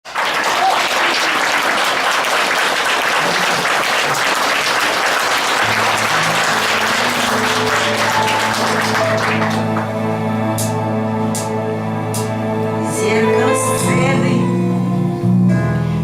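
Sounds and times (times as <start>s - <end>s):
audience applauding: 0.0s - 10.8s
instrumental music with low note: 5.7s - 16.0s.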